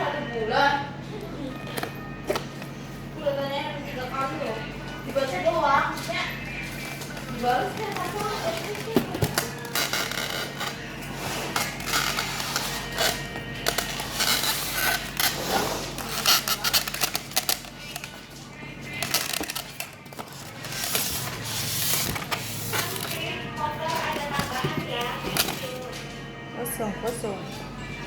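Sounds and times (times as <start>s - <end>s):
background music: 3.6s - 28.0s
objects clicking and rustling: 5.1s - 26.2s.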